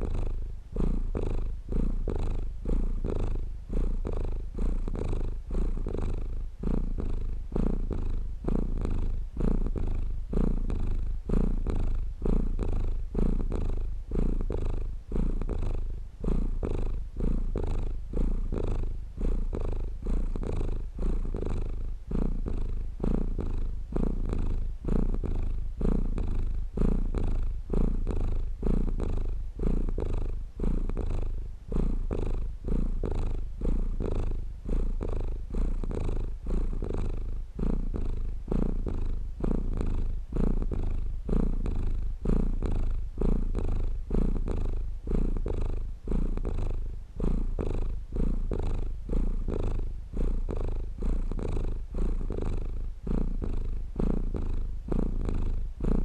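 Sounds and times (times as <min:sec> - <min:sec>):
cat purring: 0:00.0 - 0:56.0.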